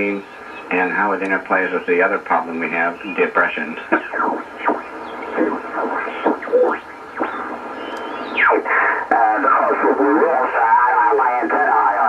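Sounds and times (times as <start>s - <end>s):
garbled radio voices: 0.0s - 12.0s
radio band noise: 0.0s - 12.0s
falling radio whistle: 4.3s - 9.0s.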